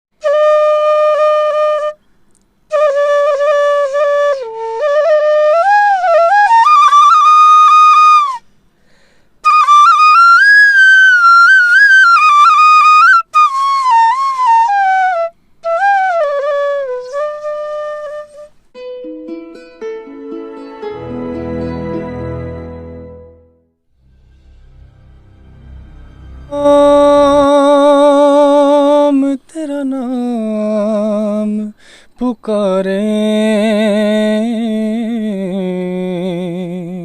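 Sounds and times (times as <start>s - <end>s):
bamboo flute melody: 0.2s - 2.1s, 2.7s - 8.5s, 9.4s - 23.4s, 24.2s - 29.3s.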